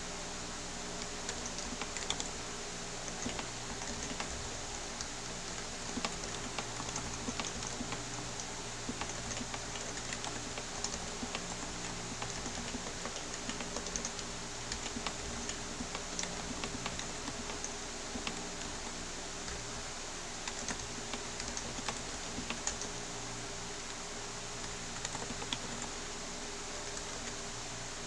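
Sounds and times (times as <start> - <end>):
keyboard typing: 5.9 - 8.0, 8.9 - 18.9, 20.5 - 22.9, 25.0 - 25.9.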